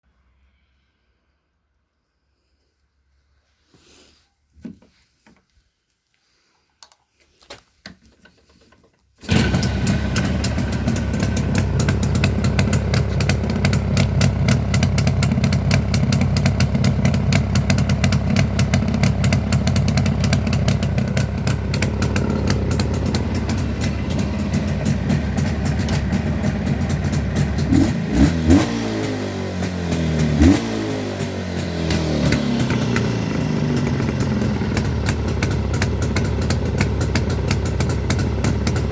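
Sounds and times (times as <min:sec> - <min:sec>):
motorcycle engine running: 0:09.2 - 0:38.9.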